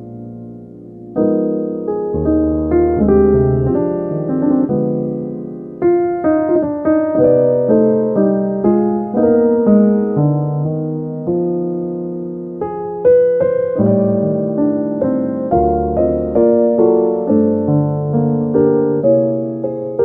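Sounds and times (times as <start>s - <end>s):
piano music: 0.0s - 20.0s.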